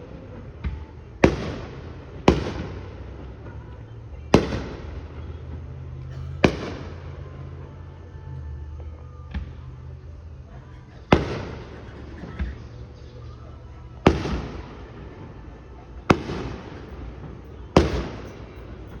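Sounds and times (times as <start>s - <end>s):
fireworks bangs with rolling echo: 0.0s - 7.5s, 11.0s - 13.0s, 13.8s - 19.0s.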